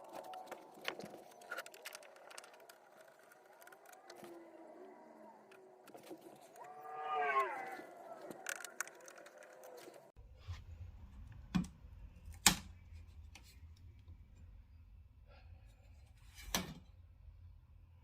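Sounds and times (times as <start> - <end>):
plastic and metal parts clicking: 0.0 - 4.6, 7.5 - 10.1.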